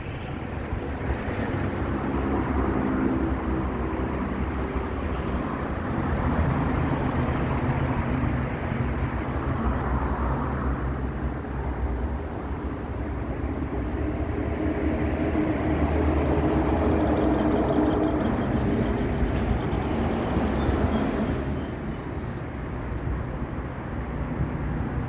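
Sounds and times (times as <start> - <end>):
train rumble: 0.0 - 25.0
locomotive engine droning: 13.4 - 23.4.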